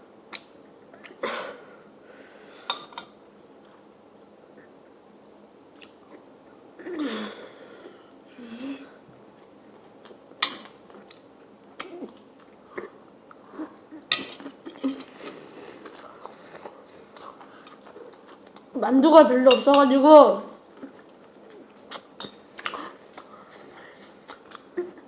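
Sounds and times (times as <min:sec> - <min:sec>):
chewing: 0:05.8 - 0:06.3, 0:09.1 - 0:18.7, 0:20.7 - 0:24.9.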